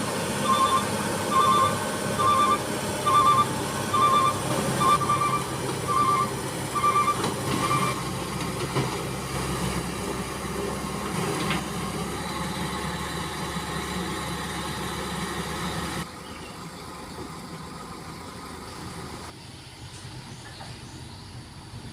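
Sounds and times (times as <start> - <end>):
excavator diesel engine under load: 0.0 - 21.9
alarm beeping: 0.4 - 8.1.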